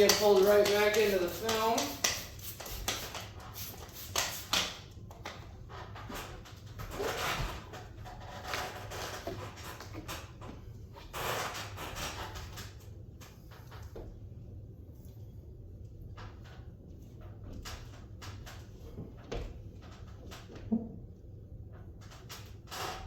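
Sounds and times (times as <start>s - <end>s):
squeegee swishing on wet glass: 0.0s - 4.9s.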